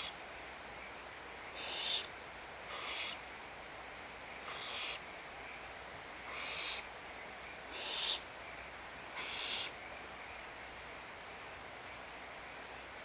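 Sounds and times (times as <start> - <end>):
barn owls hissing screech calls: 1.5 - 3.3, 4.4 - 5.0, 6.2 - 6.9, 7.7 - 8.3, 9.1 - 9.8.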